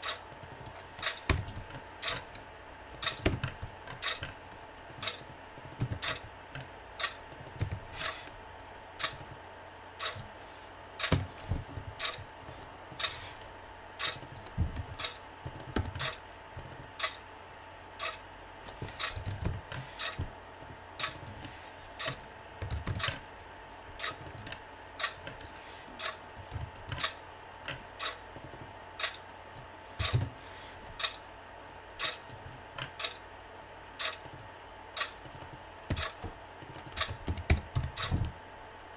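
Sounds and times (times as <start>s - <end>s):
clock ticking: 0.0s - 4.3s, 12.0s - 12.2s, 14.0s - 15.2s, 17.0s - 17.2s, 28.0s - 28.2s, 31.0s - 31.2s, 32.0s - 32.3s, 32.9s - 33.3s, 35.0s - 36.3s
computer keyboard typing: 0.0s - 8.4s, 11.0s - 13.4s, 14.0s - 17.2s, 18.6s - 27.2s, 28.0s - 30.4s, 34.1s - 38.4s
faint steady hum: 0.0s - 38.9s.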